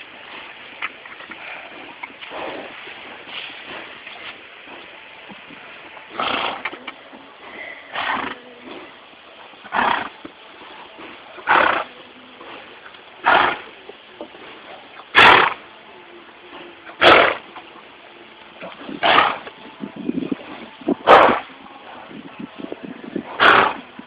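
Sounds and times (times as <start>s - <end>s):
horse sneezing: 6.2s - 6.7s, 7.8s - 8.4s, 9.7s - 10.2s, 11.4s - 11.8s, 13.2s - 13.7s, 15.1s - 15.6s, 17.0s - 17.4s, 19.0s - 19.4s, 23.4s - 23.8s.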